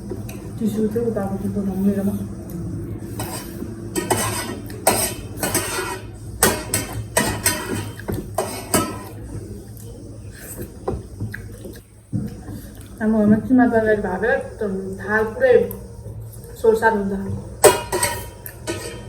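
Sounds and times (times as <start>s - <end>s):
spoons scraping plates: 2.8s - 11.8s, 15.0s - 19.0s.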